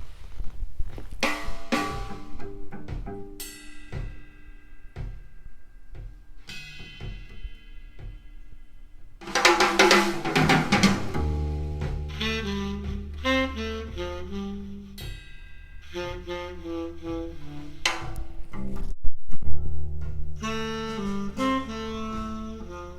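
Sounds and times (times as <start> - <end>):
bass line and drums: 0.0 - 4.4, 9.2 - 22.9
drum and cymbal fill: 1.2 - 18.5
saxophone melody: 11.2 - 18.6, 20.4 - 22.9.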